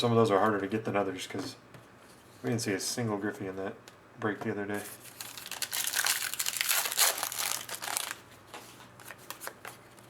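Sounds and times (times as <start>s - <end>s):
plastic foil wrapper crinkling: 5.0s - 8.3s.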